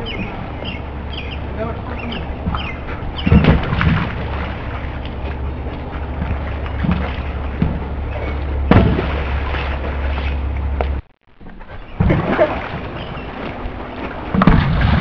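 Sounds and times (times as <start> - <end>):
water splashing: 0.0 - 11.0, 11.9 - 15.0
steady low hum: 0.0 - 15.0
ball thumping: 2.4 - 4.3, 8.7 - 9.3.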